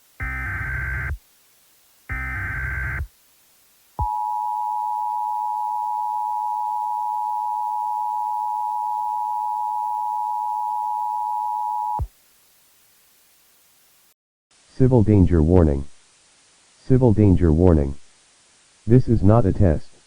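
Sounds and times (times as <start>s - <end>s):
two-tone attention signal: 4.0s - 12.1s.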